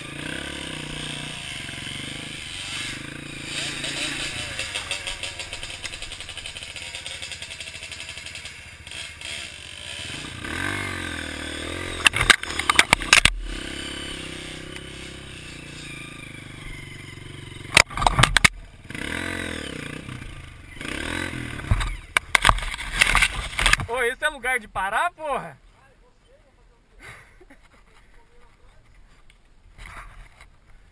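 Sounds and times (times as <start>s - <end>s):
motorcycle engine running: 0.0s - 23.9s.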